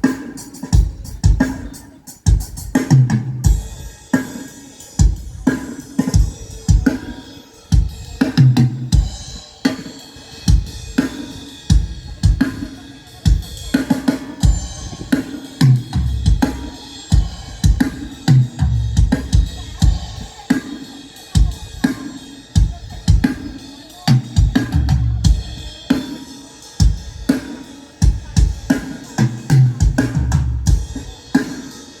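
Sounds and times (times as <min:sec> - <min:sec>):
cymbals: 0:00.0 - 0:32.0
low pitched drum fill: 0:13.3 - 0:20.3.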